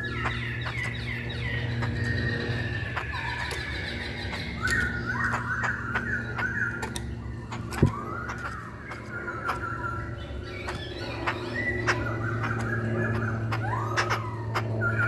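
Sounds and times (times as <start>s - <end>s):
laughingthrush singing: 0.0s - 15.0s
sharp clicks: 4.5s - 5.4s, 6.7s - 8.6s.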